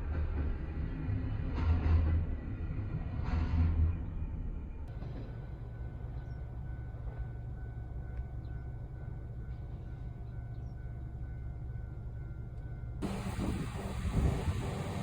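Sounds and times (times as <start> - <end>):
faint high whine: 13.0 - 15.0
low vehicle rumble: 13.0 - 15.0.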